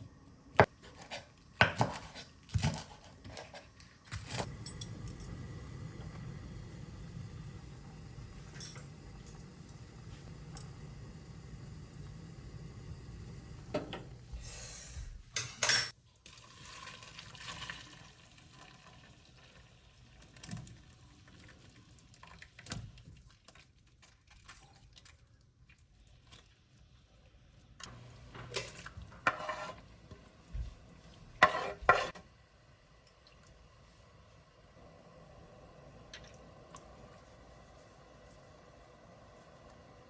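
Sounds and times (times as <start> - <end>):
cookware and utensils clattering: 8.5 - 9.4, 15.3 - 16.0, 28.3 - 29.9, 31.4 - 32.2.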